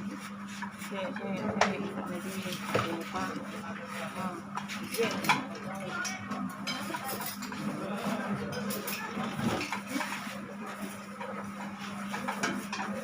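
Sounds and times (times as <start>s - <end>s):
indistinct chatter: 0.8s - 13.0s
dishes and cutlery clinking: 4.6s - 13.0s.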